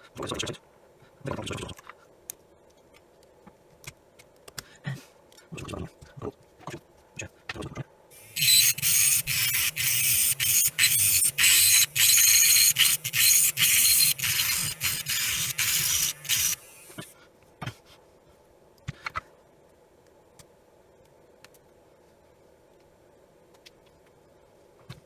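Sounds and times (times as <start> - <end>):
hand tool scraping: 8.2 - 17.1.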